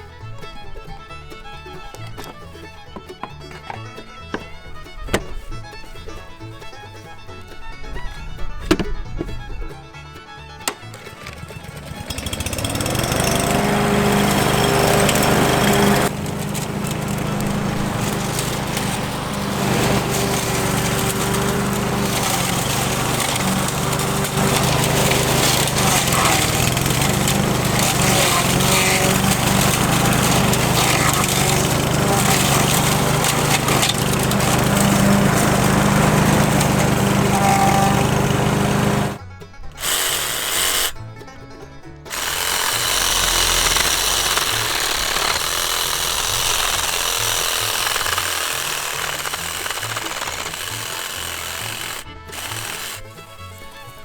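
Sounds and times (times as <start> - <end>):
background music: 0.0 - 54.0
motor running steadily: 11.7 - 39.2, 42.1 - 53.2.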